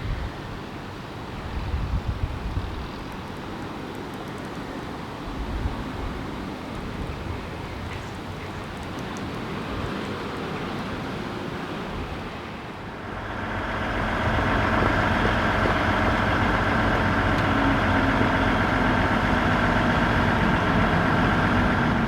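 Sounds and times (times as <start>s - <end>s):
diesel train engine humming: 0.0s - 22.0s
high engine whine: 11.4s - 22.0s.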